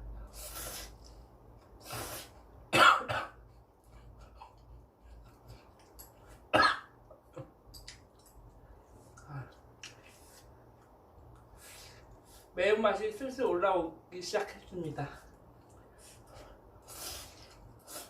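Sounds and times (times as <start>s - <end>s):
person coughing: 2.7s - 3.4s, 6.5s - 7.0s.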